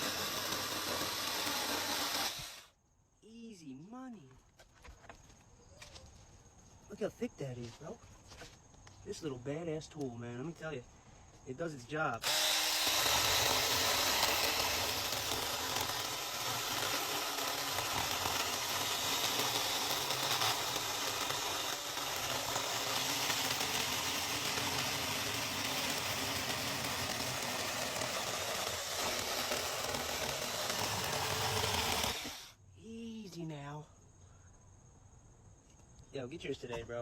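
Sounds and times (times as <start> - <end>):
mini chainsaw cutting log: 0.0 - 2.7, 12.2 - 32.6.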